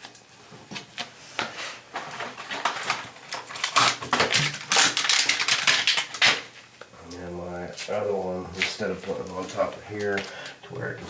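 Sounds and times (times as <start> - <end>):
wax crackling and clicking: 0.0 - 11.0.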